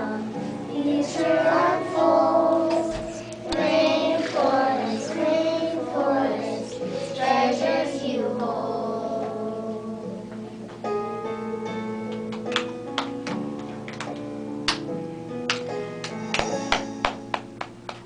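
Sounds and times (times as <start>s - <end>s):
children singing: 0.0s - 10.2s
instrumental accompaniment: 0.0s - 18.0s.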